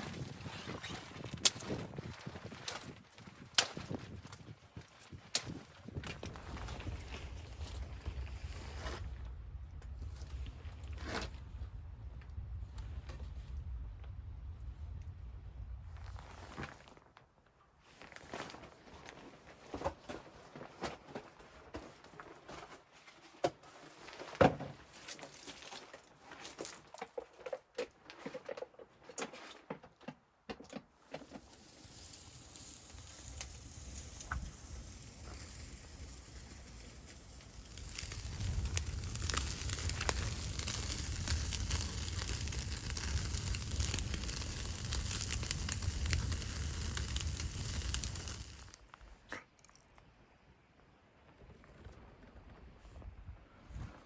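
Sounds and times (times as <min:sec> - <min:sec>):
fire burning with crackles: 0:00.0 - 0:17.1, 0:31.4 - 0:49.0
knocks and crinkling of handling: 0:16.6 - 0:31.8.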